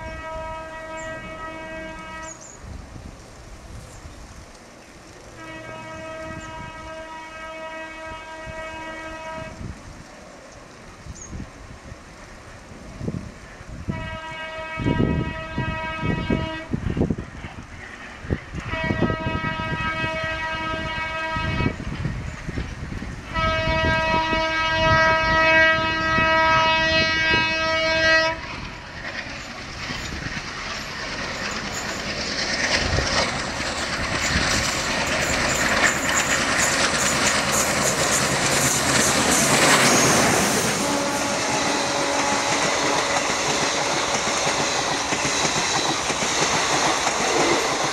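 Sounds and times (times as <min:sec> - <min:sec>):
diesel locomotive horn blasts: 0:00.0 - 0:02.6, 0:05.3 - 0:09.8, 0:13.7 - 0:17.2, 0:18.6 - 0:22.0, 0:23.2 - 0:28.7, 0:33.1 - 0:45.7
train passing with rushing rail noise: 0:00.0 - 0:47.9
train wheels clattering on rail joints: 0:28.4 - 0:47.9.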